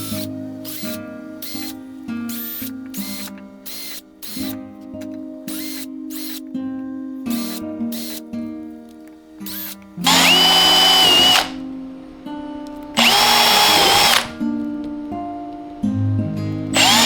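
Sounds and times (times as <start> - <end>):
power drill spinning: 0.0 - 4.6, 5.5 - 6.4, 7.3 - 8.2, 9.4 - 11.6, 12.7 - 14.7, 16.7 - 17.0
background music: 0.0 - 17.0.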